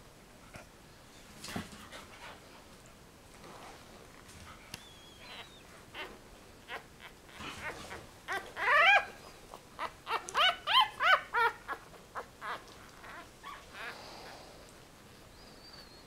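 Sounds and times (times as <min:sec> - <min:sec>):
puppies squealing and whimpering: 0:04.8 - 0:14.3.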